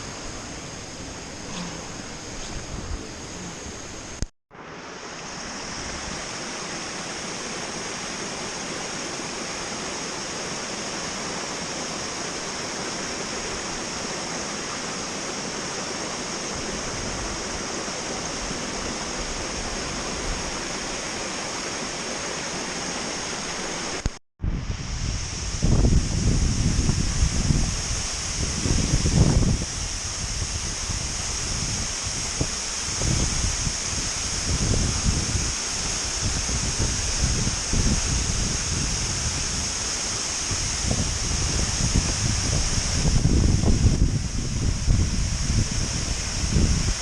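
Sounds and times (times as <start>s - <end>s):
wind buffeting microphone: 0.0s - 4.2s, 24.4s - 47.0s
flowing water rushing: 0.0s - 24.2s, 25.1s - 47.0s
high hiss: 0.0s - 47.0s.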